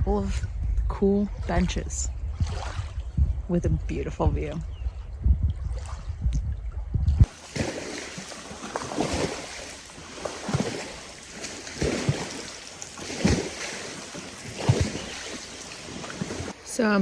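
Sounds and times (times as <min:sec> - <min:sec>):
small waves lapping on shore: 0:07.2 - 0:17.0
steady hiss of water: 0:07.3 - 0:16.6.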